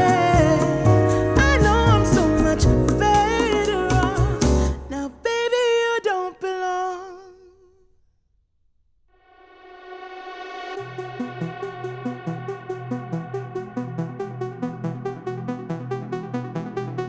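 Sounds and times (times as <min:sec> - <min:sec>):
pop song with singing: 0:00.0 - 0:07.8.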